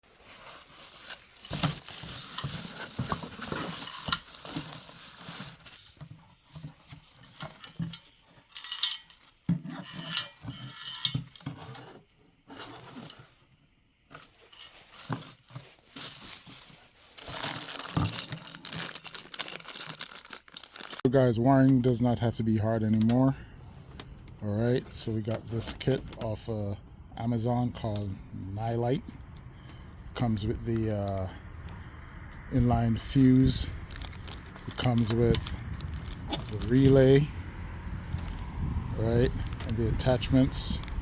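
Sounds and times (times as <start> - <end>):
rustling: 0.0 - 21.1, 33.6 - 37.4
handling clicks and clinks: 0.3 - 13.3, 14.1 - 21.8, 23.9 - 26.7, 33.2 - 37.3, 39.1 - 41.0.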